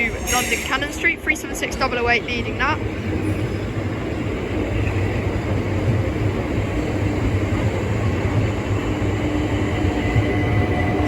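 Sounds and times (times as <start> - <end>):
electric train traction hum: 0.0 - 11.0.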